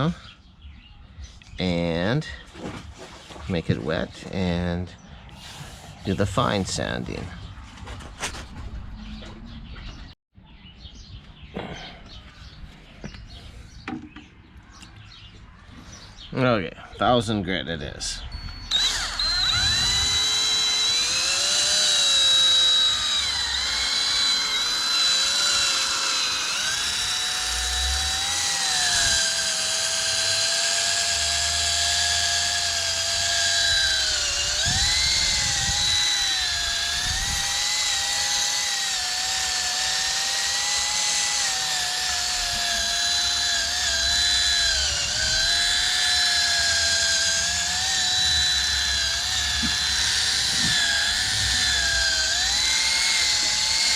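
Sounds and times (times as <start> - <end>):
cordless drill motor whine: 18.3 - 53.9.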